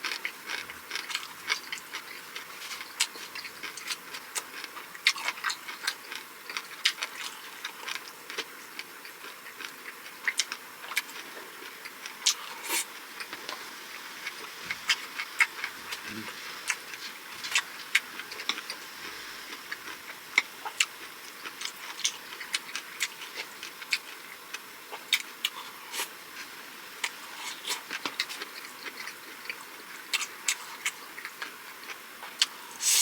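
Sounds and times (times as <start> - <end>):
person chewing food: 0.0 - 33.0.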